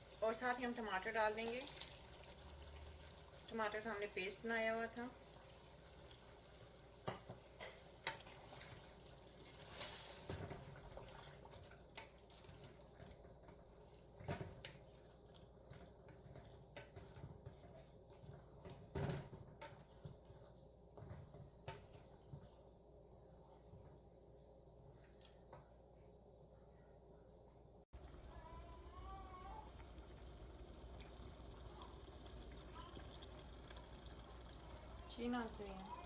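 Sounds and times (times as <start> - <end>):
food hissing in a pot: 7.9 - 11.5.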